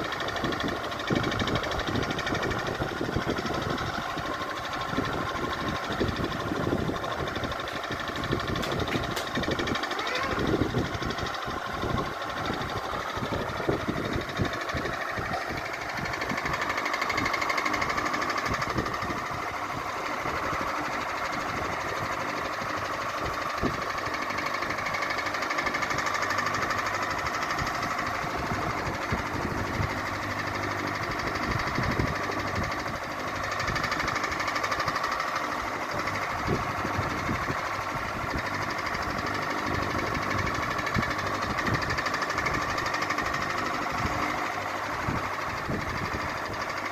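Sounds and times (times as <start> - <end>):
ceiling fan humming: 0.0 - 46.9
fan rattling clatter: 0.0 - 46.9.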